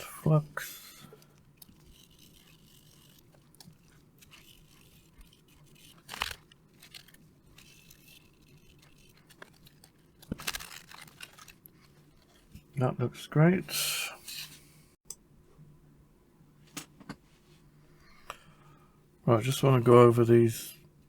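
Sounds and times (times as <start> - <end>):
scratchy scrubbing on circuit board: 0.6 - 12.5.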